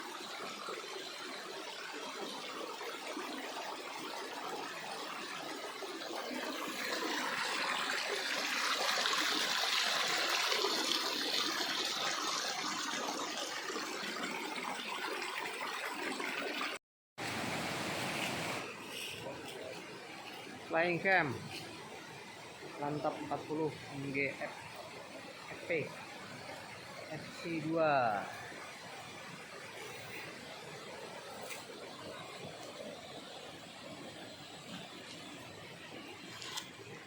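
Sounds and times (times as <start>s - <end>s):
stream water flowing: 0.0s - 37.0s.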